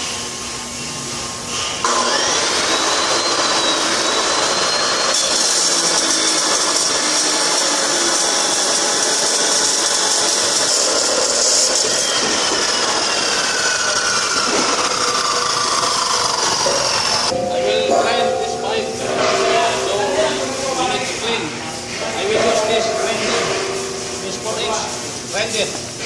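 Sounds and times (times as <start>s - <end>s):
power cutting tool cutting steel pipe: 1.8s - 17.4s.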